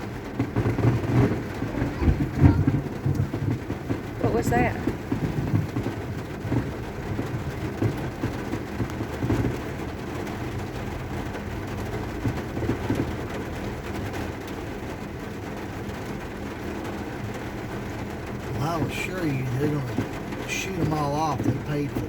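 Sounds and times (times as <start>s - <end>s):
distant fireworks booming: 0.0s - 9.7s.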